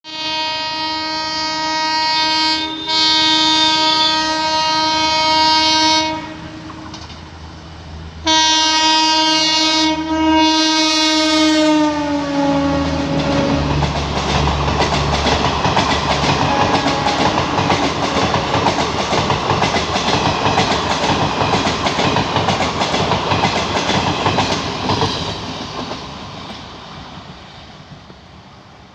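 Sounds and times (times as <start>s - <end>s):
locomotive horn blasts: 0.0s - 7.0s, 8.2s - 13.8s, 16.3s - 18.6s
train wheels clacking over rail joints: 6.6s - 7.3s, 12.9s - 28.3s.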